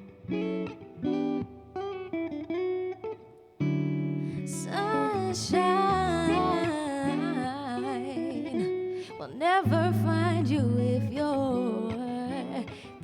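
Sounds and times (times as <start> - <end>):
guitar plucked chords: 0.0 - 13.0
person singing wordless vocal: 4.3 - 13.0.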